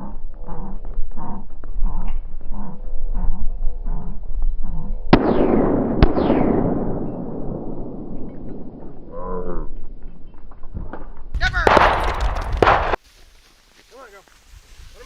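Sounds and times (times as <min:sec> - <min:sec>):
shotgun shots with rolling echo: 0:05.1 - 0:09.1, 0:11.5 - 0:13.0.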